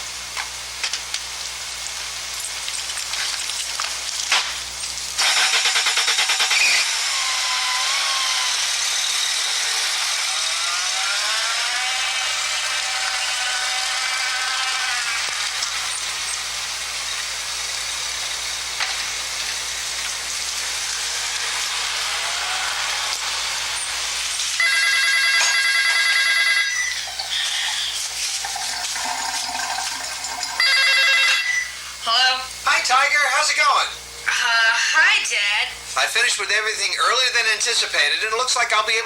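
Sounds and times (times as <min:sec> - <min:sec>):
telephone ringing: 0:24.6 - 0:27.5, 0:30.4 - 0:31.9.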